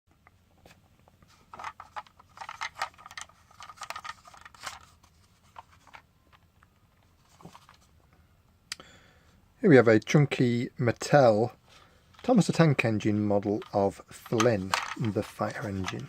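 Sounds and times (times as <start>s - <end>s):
handling clicks and scrapes: 0.6s - 7.9s, 13.3s - 16.0s.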